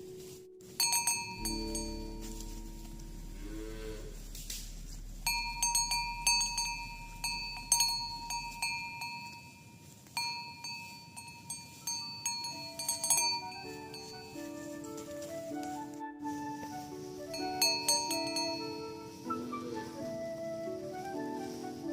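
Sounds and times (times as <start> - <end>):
cow bell clanking: 0.8 - 14.3, 17.3 - 18.8.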